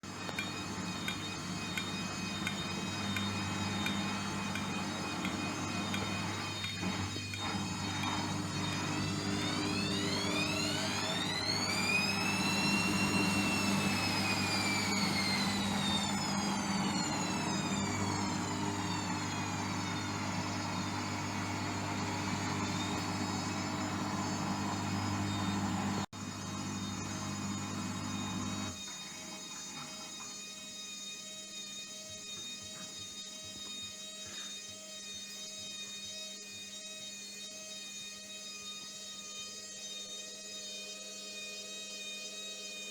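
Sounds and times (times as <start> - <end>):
rising and falling motor whine: 0.0 - 37.0
washing machine drum humming: 0.1 - 28.7.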